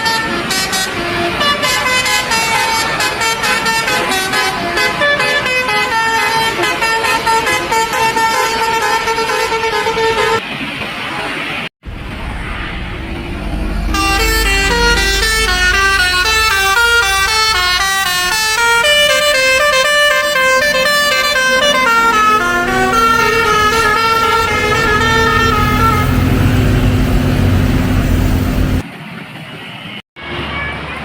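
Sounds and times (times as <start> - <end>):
musical multi-tone air horn: 0.0 - 10.4, 13.7 - 27.6
bus engine rumbling: 11.8 - 28.8.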